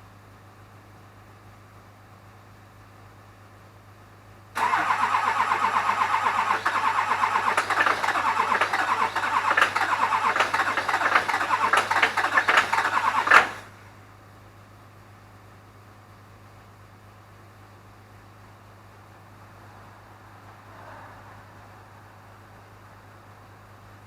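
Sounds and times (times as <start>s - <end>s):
starter cranking diesel engine: 4.6s - 13.8s.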